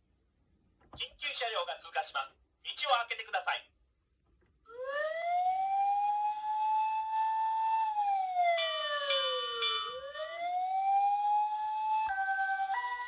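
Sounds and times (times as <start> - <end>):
toy siren wailing: 4.7 - 13.0.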